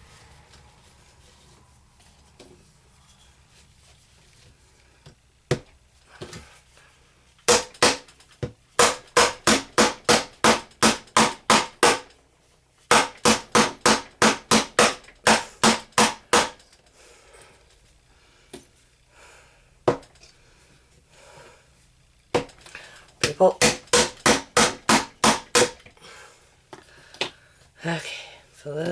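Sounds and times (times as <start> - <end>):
hammer striking plaster block: 7.5 - 12.1, 12.9 - 16.6, 23.2 - 25.8.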